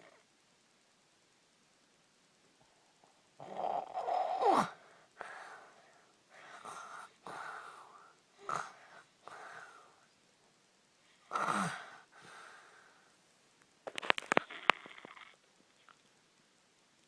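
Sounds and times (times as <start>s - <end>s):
person snoring: 3.4s - 4.8s, 11.3s - 12.1s.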